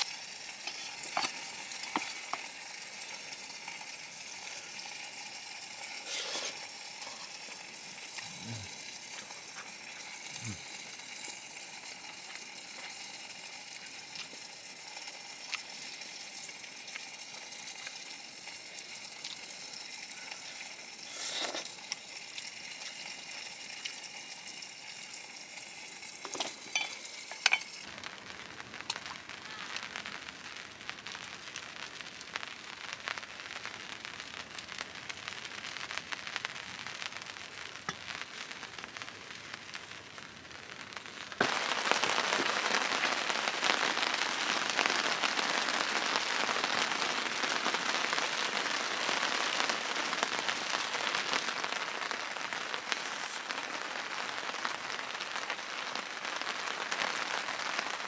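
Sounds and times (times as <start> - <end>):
chicken wings sizzling in a pan: 0.0 - 58.0
utensils knocking: 26.3 - 27.7.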